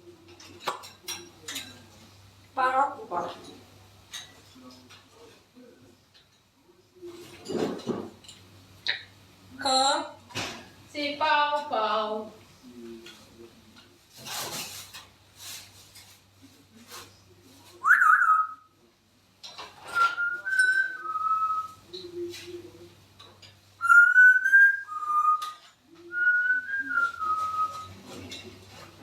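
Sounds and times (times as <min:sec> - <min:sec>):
parrot whistling: 0:17.8 - 0:18.7, 0:20.0 - 0:21.8, 0:23.8 - 0:27.9.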